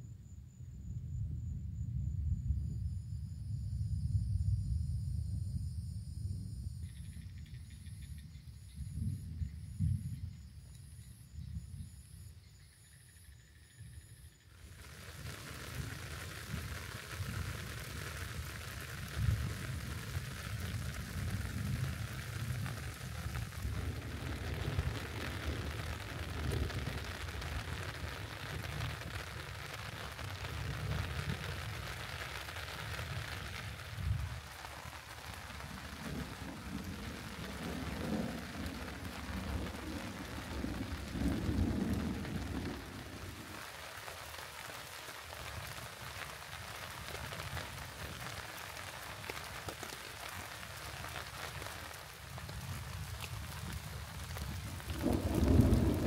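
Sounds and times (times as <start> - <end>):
rain falling: 14.5 - 56.0
low thunder rumbling: 15.2 - 29.6, 32.8 - 43.7, 52.3 - 56.0.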